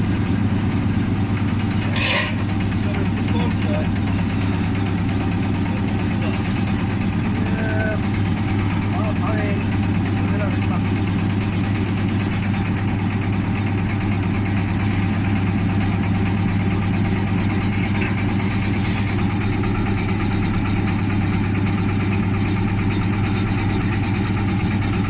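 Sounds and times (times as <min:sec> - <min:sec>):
bread slicer motor hum: 0:00.0 - 0:25.0.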